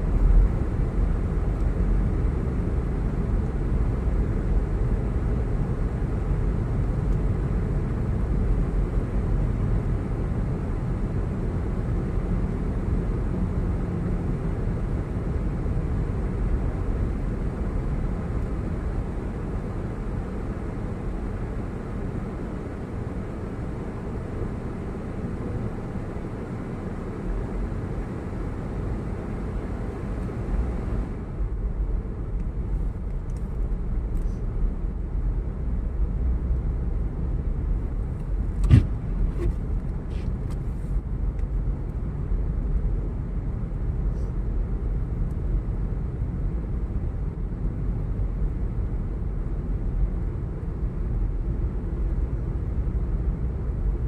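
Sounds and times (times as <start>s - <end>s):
vehicle rumble from inside: 0.0s - 54.0s
sharp knock: 38.6s - 39.0s.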